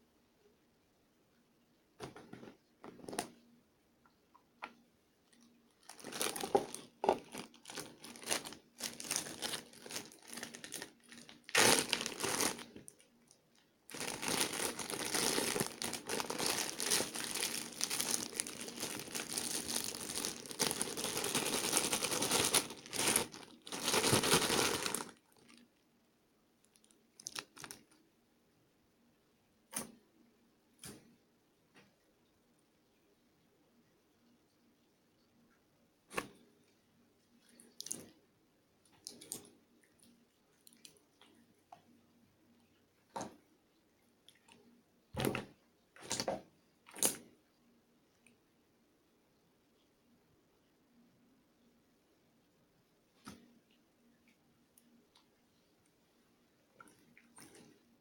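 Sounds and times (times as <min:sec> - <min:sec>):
crinkling and rustling: 0:02.0 - 0:03.5, 0:04.6 - 0:25.7, 0:26.7 - 0:28.0.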